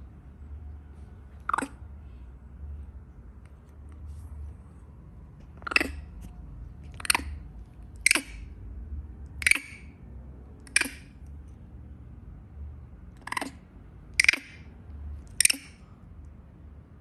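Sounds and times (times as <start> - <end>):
young monkey squeaking: 1.4 - 1.8, 5.5 - 8.6, 9.4 - 10.0, 10.7 - 11.2, 13.2 - 13.6, 14.2 - 14.7, 15.3 - 15.8.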